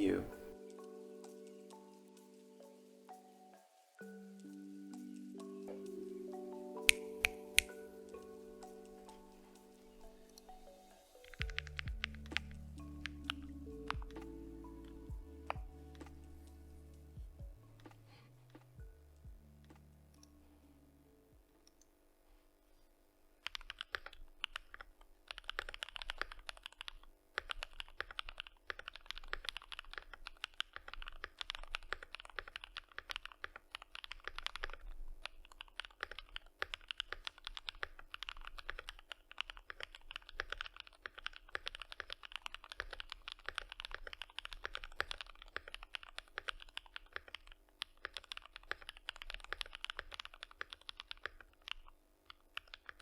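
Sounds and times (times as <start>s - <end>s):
fast typing on mechanical keyboard: 23.4s - 53.0s.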